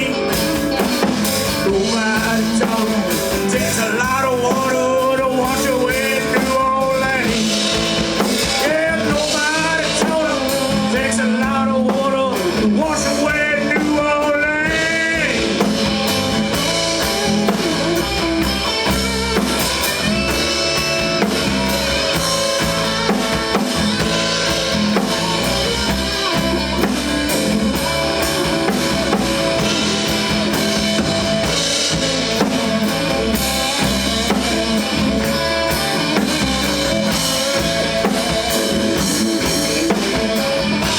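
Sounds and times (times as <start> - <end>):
band playing instrumental: 0.0 - 40.9
lead guitar bending pitch: 15.8 - 40.9.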